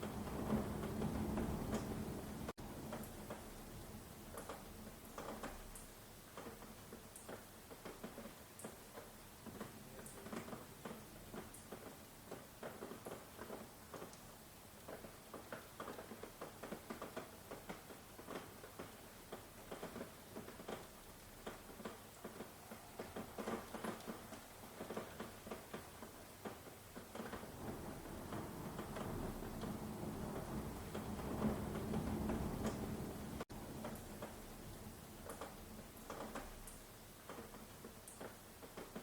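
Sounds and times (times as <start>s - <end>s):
rain drops pattering: 0.0s - 39.0s
low rumble: 27.6s - 33.4s.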